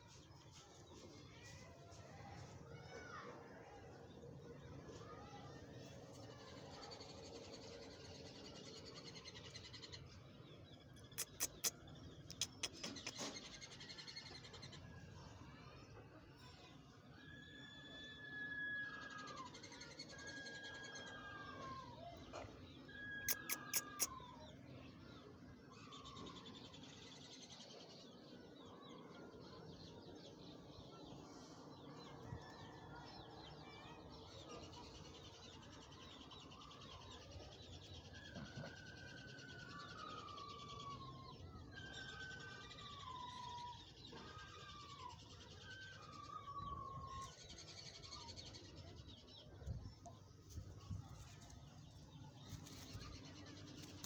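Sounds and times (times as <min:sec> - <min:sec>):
high bird chatter: 0:04.9 - 0:15.8, 0:18.9 - 0:54.0
sharp clicks: 0:11.2 - 0:13.2
parrots whistling calls: 0:23.3 - 0:24.1.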